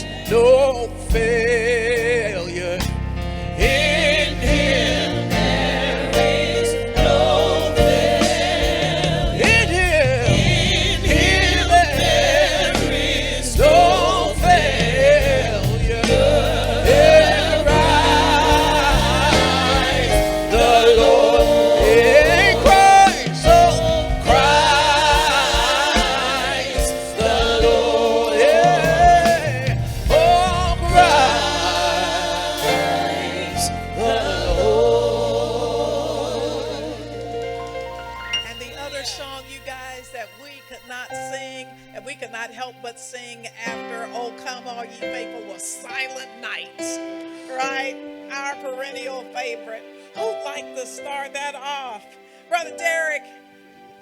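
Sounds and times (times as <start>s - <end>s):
bass and beat accompaniment: 0.0s - 40.0s
gospel choir singing: 0.0s - 54.0s.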